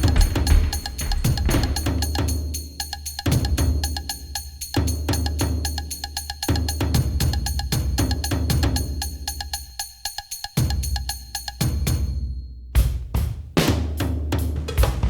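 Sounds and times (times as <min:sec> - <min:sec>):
sharp woody drum hits: 0:00.0 - 0:02.4.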